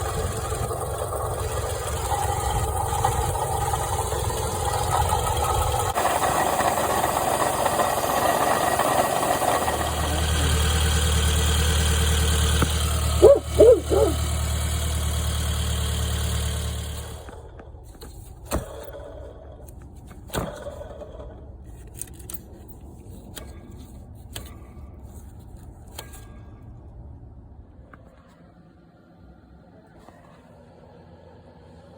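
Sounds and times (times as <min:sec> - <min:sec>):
car engine knocking: 0:00.0 - 0:17.5.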